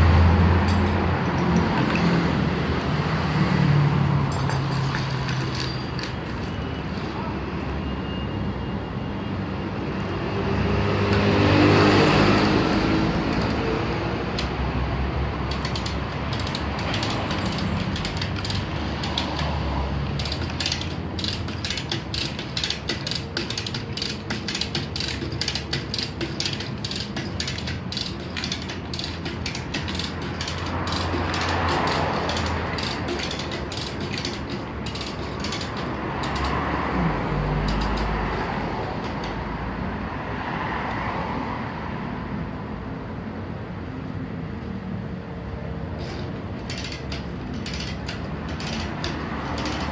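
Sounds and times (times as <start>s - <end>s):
winch ratchet pawl clicking: 0.6s - 3.0s, 4.3s - 6.6s, 12.0s - 14.7s, 15.3s - 39.6s, 46.0s - 49.9s.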